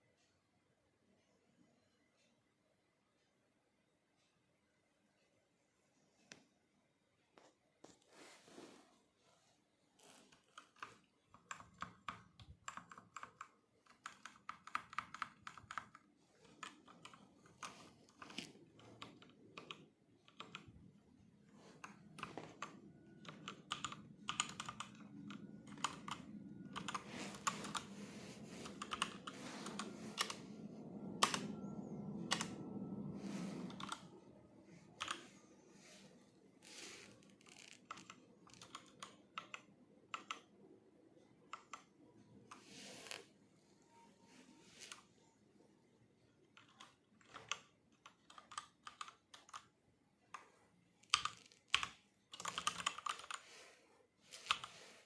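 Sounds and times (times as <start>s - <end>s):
low background hum: 0.0s - 55.0s
mechanical keyboard typing: 10.1s - 21.0s, 21.6s - 34.2s, 34.9s - 35.4s, 36.8s - 40.5s, 46.5s - 53.5s, 54.4s - 54.8s.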